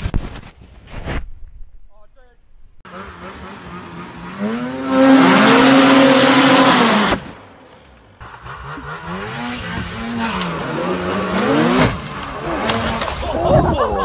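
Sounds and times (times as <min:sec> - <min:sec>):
snowmobile engine revving: 0:02.9 - 0:07.4, 0:08.2 - 0:14.0.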